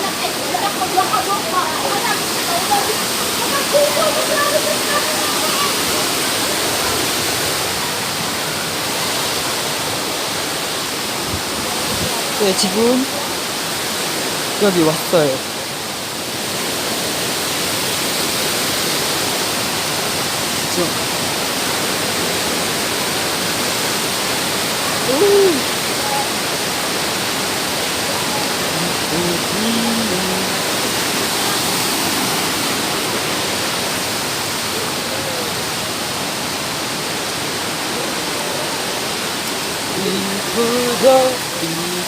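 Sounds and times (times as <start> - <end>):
waterfall roaring: 0.0 - 42.0
faint voices: 24.8 - 26.5.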